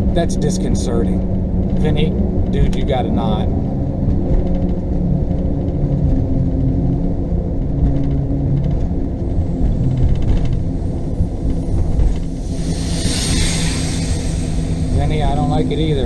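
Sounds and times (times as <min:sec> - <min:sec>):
hiss: 0:12.3 - 0:15.8.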